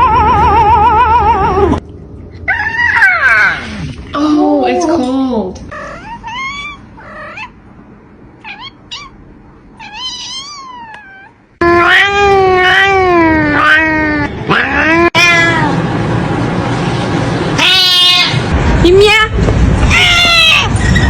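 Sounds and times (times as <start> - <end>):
cat chirping: 5.7 - 7.6, 8.4 - 15.6
cat meowing: 8.4 - 9.2, 9.8 - 15.8, 17.6 - 18.5, 19.9 - 21.0.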